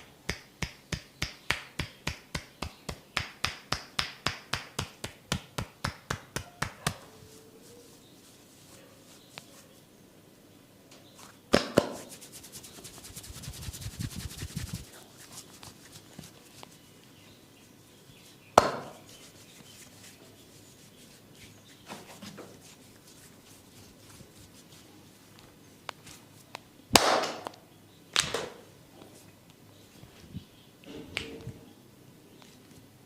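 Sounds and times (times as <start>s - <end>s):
rapid chopping hand strokes: 0.3s - 9.6s, 11.5s - 16.8s.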